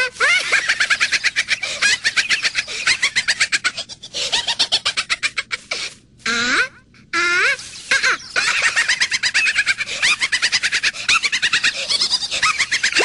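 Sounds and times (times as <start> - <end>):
high-pitched gibberish chatter: 5.6 - 10.4.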